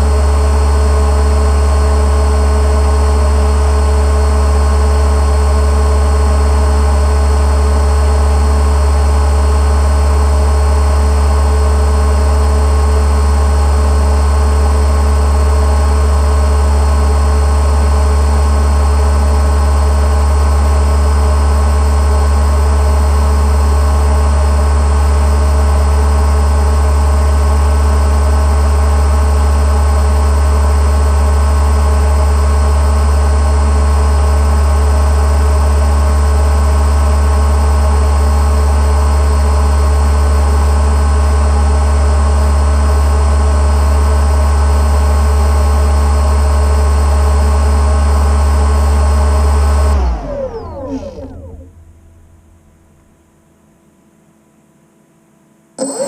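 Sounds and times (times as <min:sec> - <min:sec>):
boat motor running: 0:49.7 - 0:53.1.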